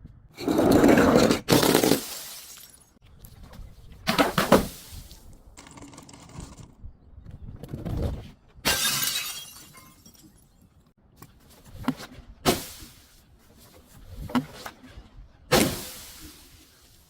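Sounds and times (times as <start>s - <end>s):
glass shattering and crunching: 1.5s - 3.0s, 8.7s - 10.6s.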